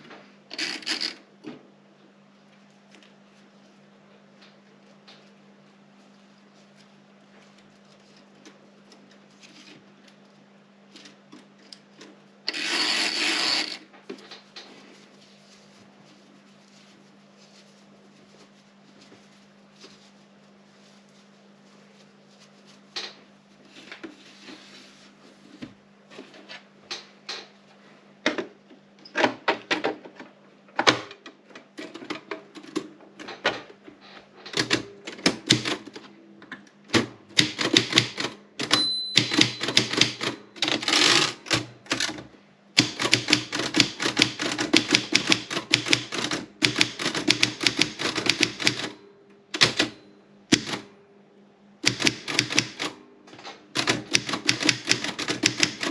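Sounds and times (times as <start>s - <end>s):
manual typewriter typing: 34.5s - 36.0s, 36.9s - 42.2s, 42.8s - 50.9s, 51.8s - 53.0s, 53.7s - 55.9s
typewriter bell ring: 38.6s - 40.9s.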